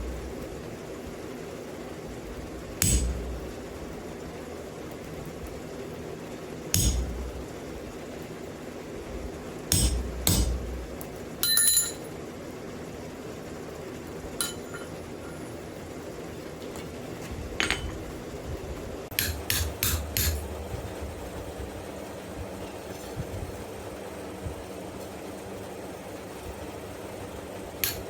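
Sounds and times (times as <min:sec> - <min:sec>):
steady low drone: 0:00.0 - 0:00.7, 0:06.7 - 0:07.8
hammer striking punch on anvil: 0:02.8 - 0:03.6, 0:06.7 - 0:07.4, 0:09.7 - 0:12.0, 0:14.4 - 0:15.0, 0:19.1 - 0:20.5.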